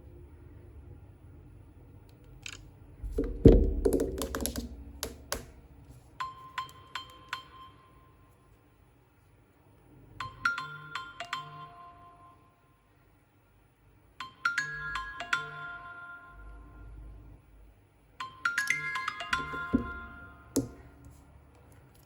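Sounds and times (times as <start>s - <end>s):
heavy thump: 3.0s - 5.6s
phone handling clicks and knocks: 3.1s - 5.7s, 19.4s - 20.8s.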